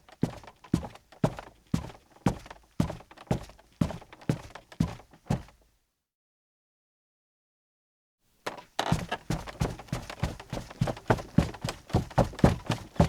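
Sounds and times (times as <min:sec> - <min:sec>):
footsteps on creaky floor: 0:08.8 - 0:13.0.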